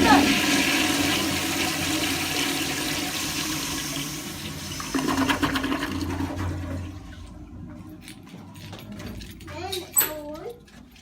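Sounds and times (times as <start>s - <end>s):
toilet flushing: 0.0s - 7.6s.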